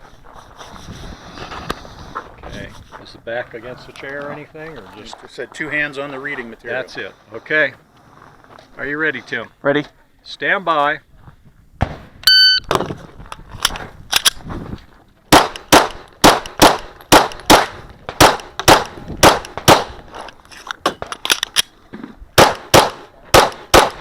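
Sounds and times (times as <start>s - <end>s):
rapid pistol shots: 15.3s - 20.0s, 22.4s - 24.0s.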